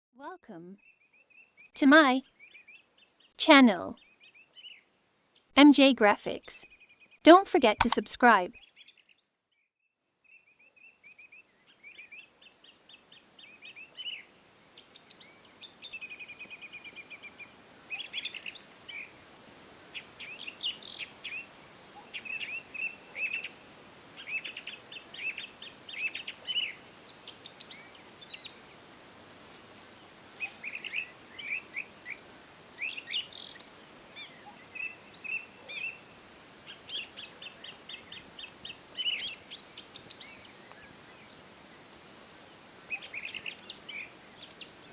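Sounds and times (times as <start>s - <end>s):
small songbirds chirping: 0.8s - 3.4s, 4.0s - 5.5s, 8.6s - 9.6s, 10.2s - 44.9s
faint steady hiss: 10.5s - 44.9s.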